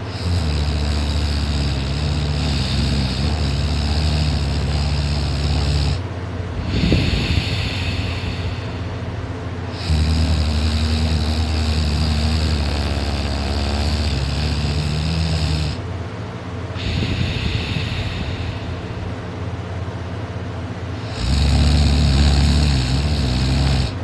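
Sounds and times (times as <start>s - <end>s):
man snoring: 0.0s - 6.0s, 6.6s - 8.9s, 9.7s - 15.8s, 16.8s - 19.0s, 21.0s - 24.0s
quiet breath: 6.6s - 9.0s, 16.8s - 19.2s.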